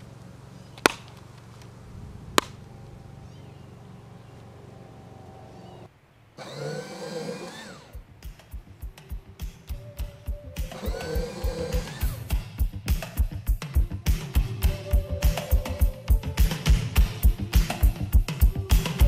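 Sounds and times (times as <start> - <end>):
sharp clicks: 0.0 - 3.0, 6.4 - 12.4
steady low hum: 0.0 - 19.0
music with steady beat: 8.0 - 19.0.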